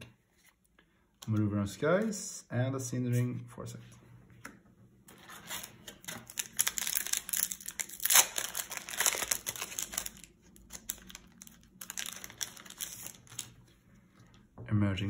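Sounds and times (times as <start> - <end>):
plastic wrapper tearing and crinkling: 5.2 - 13.7.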